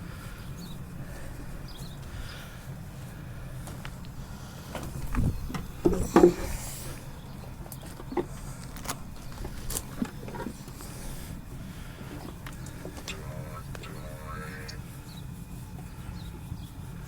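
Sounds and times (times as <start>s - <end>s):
steady low hum: 0.0s - 16.5s.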